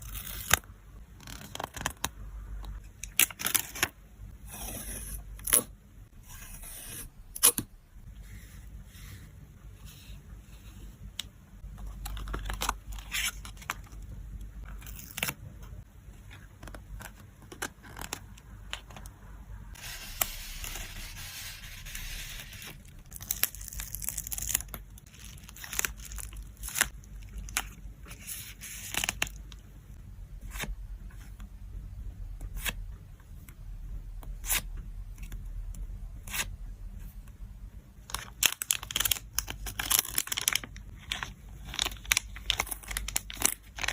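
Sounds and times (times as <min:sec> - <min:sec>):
plastic and paper wrapping tearing: 0:38.1 - 0:43.9.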